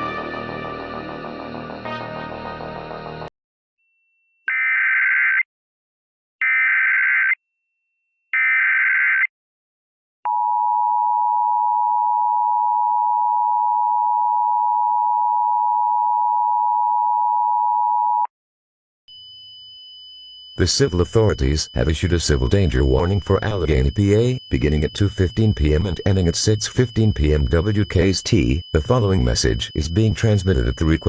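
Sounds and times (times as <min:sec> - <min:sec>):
two-tone attention signal: 0:20.5 - 0:31.0
digital data bursts: 0:20.6 - 0:31.0.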